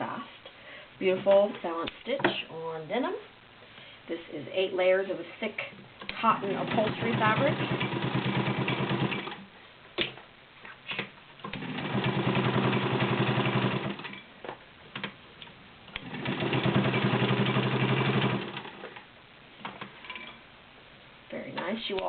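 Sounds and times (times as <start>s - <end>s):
sewing machine motor hum: 6.4s - 9.4s, 11.5s - 14.1s, 16.0s - 18.9s
sewing machine stitch rattle: 16.0s - 18.8s.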